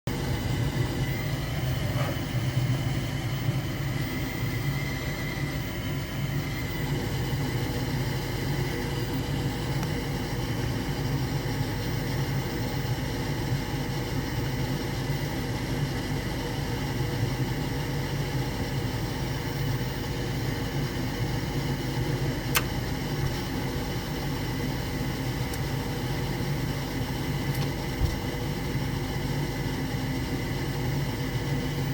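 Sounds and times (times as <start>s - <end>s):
furnace motor humming: 0.1s - 31.9s
sharp furnace clicks: 22.4s - 23.6s, 25.4s - 28.3s.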